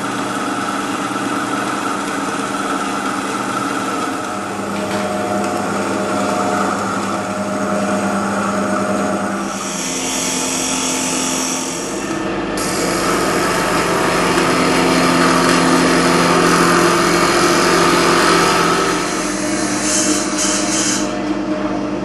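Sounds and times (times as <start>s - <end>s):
electric drill motor whine: 0.0s - 21.3s
grinding bit rasping on metal: 4.8s - 21.2s.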